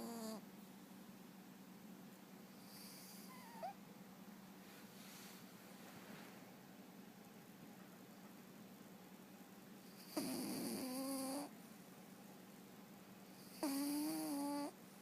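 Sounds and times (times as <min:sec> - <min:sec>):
cat snoring: 0:00.0 - 0:00.4, 0:02.6 - 0:03.8, 0:09.9 - 0:11.5, 0:13.4 - 0:14.8.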